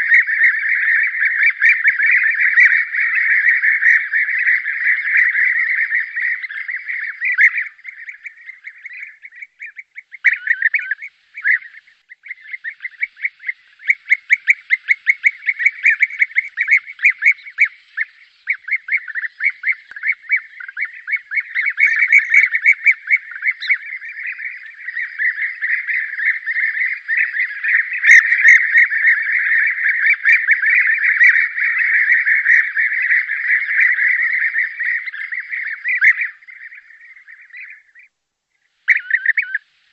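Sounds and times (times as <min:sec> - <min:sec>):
flock of birds trilling calls: 0:00.0 - 0:38.1, 0:38.8 - 0:39.9.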